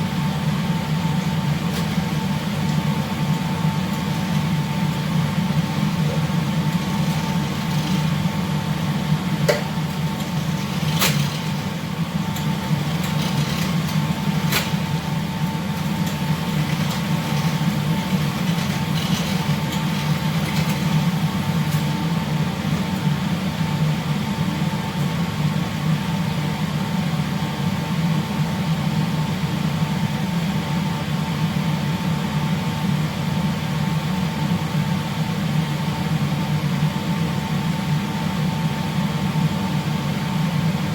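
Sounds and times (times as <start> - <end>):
ship machinery hum: 0.0 - 25.8
thin constant whine: 0.0 - 40.9.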